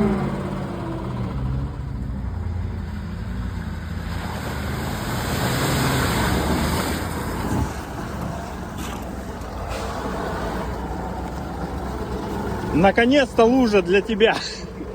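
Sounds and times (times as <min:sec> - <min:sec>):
truck engine running: 0:00.0 - 0:14.9
rushing splashing noise: 0:03.8 - 0:11.2.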